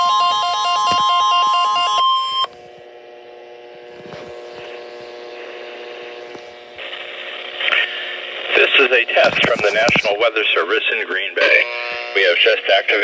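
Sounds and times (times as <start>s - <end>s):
warning alarm tone: 0.0s - 2.6s, 11.6s - 12.8s
steady electrical hum: 0.0s - 13.0s
radio hiss: 2.3s - 13.0s.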